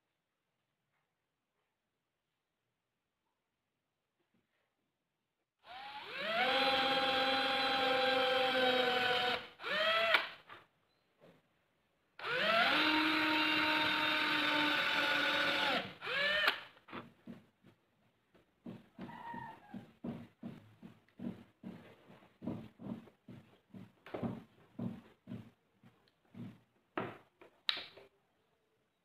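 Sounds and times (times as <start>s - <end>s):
power tool motor whine: 5.7s - 10.2s, 12.2s - 16.6s.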